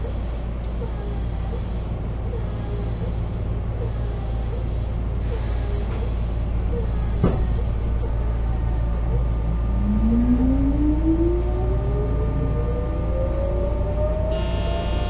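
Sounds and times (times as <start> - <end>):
train low rumble: 0.0 - 15.0
traction motor whine rising: 8.6 - 15.0.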